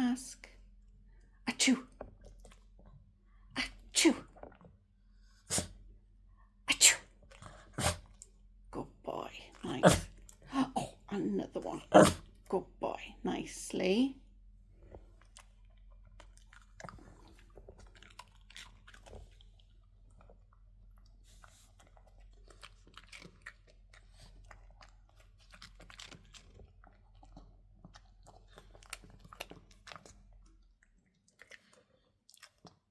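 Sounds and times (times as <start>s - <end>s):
dog chewing crunchy food: 14.8s - 32.9s.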